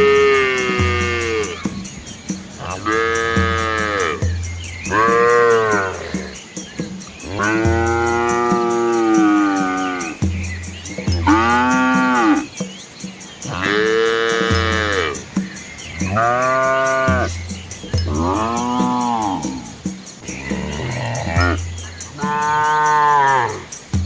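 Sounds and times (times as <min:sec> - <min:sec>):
cattle mooing: 0:02.6 - 0:04.2, 0:04.9 - 0:06.2, 0:11.2 - 0:12.5, 0:13.5 - 0:15.3, 0:16.0 - 0:17.4, 0:18.0 - 0:21.6, 0:22.2 - 0:23.7.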